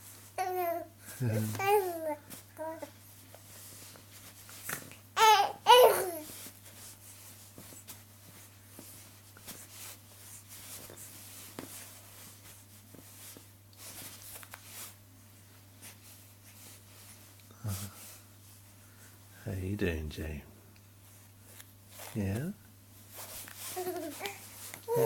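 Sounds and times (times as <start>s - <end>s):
baby cooing: 0.4s - 0.9s, 1.5s - 2.9s, 5.2s - 6.3s, 23.8s - 25.0s.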